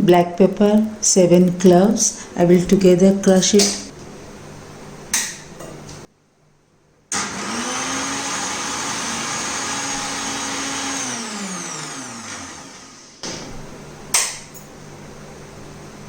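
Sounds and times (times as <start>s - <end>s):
mixer grinder motor running: 7.1s - 14.0s.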